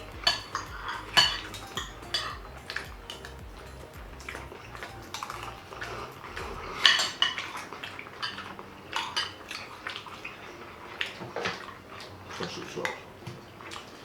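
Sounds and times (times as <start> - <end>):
cutlery clinking and scraping dishes: 0.0 - 10.2.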